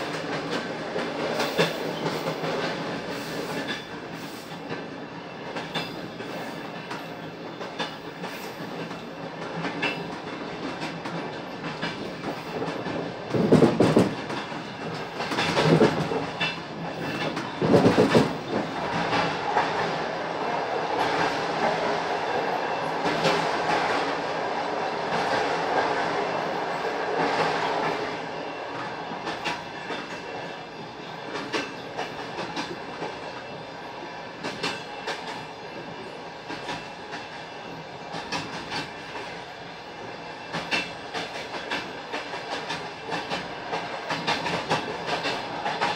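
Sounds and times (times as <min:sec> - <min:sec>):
train wheels clattering over rail joints: 0:00.0 - 0:19.9, 0:31.2 - 0:33.6, 0:38.0 - 0:39.4, 0:40.5 - 0:45.9.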